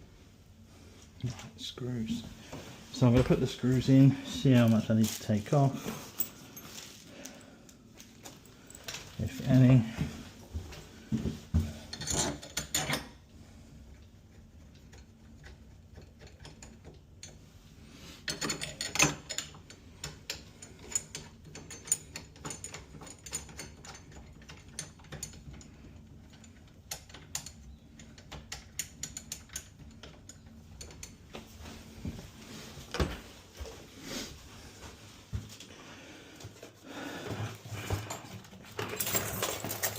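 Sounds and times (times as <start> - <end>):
clicks of metal door hardware: 11.9 - 13.1.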